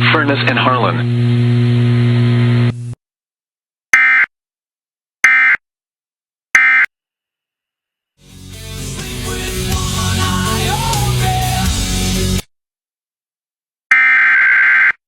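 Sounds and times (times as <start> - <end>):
music: 8.2 - 12.5.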